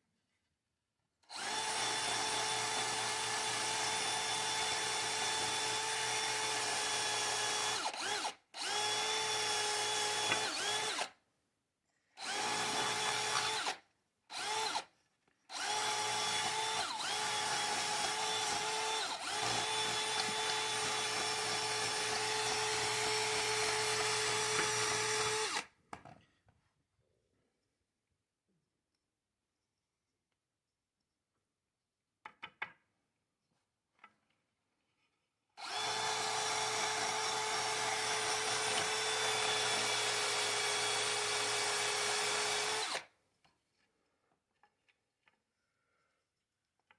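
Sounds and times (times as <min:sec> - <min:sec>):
power tool motor whine: 0:01.3 - 0:11.1, 0:12.2 - 0:14.8, 0:15.5 - 0:25.7, 0:35.6 - 0:43.0.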